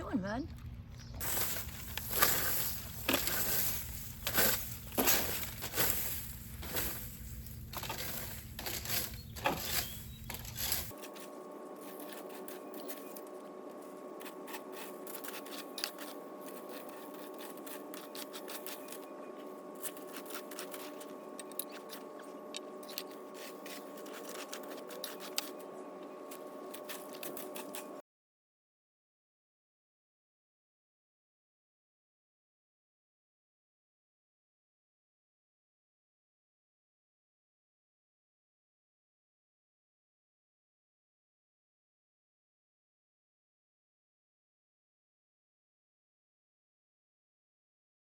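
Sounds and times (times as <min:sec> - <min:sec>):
steady hum with held tones: 0:00.0 - 0:28.0
raking dry pine needles: 0:01.2 - 0:28.0.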